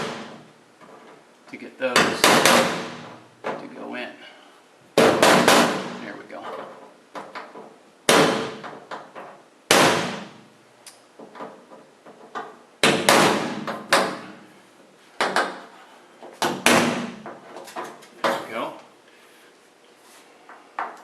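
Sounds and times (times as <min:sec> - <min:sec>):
hammer striking metal rivets: 0:01.9 - 0:03.6, 0:05.0 - 0:06.0, 0:07.2 - 0:10.4, 0:11.2 - 0:14.3, 0:15.2 - 0:15.7.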